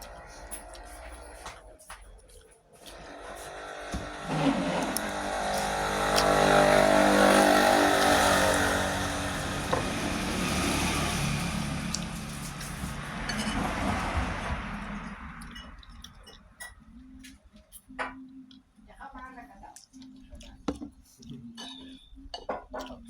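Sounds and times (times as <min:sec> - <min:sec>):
vehicle engine passing by: 0:02.9 - 0:15.6.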